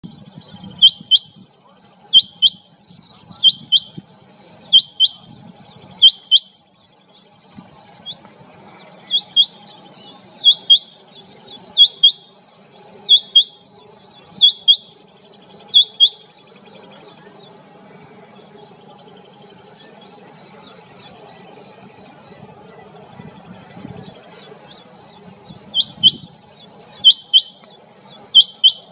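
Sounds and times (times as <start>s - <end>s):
faint high twittering: 0.0s - 28.9s.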